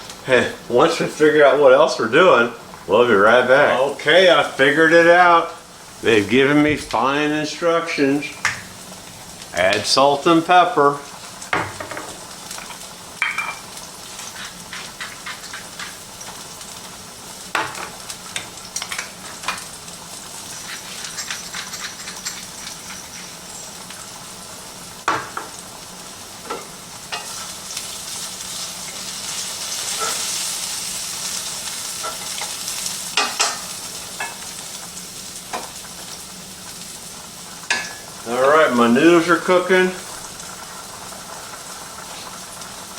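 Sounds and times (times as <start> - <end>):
vegetables sizzling in a frying pan: 0.0 - 42.9
utensil scraping a pan: 14.1 - 16.1, 20.5 - 23.4.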